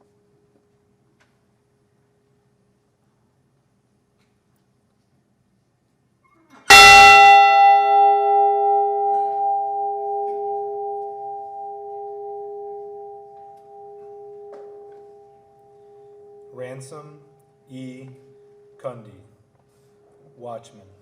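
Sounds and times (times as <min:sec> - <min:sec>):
large bell tolling: 0:06.7 - 0:16.8.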